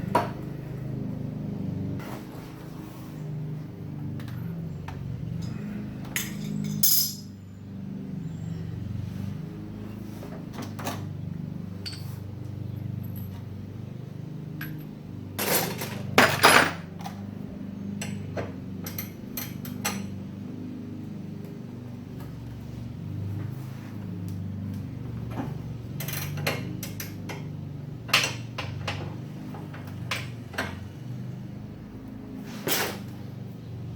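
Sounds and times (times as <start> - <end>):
metallic clinks and clanks: 5.4 - 7.4.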